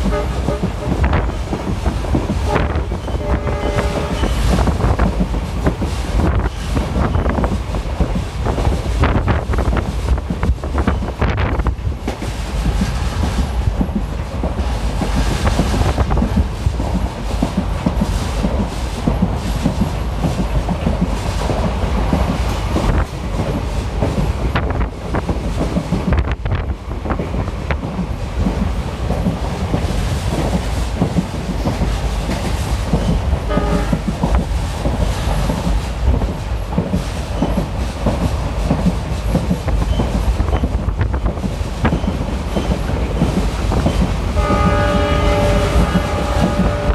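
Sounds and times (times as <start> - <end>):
train rumble: 0.0 - 46.9.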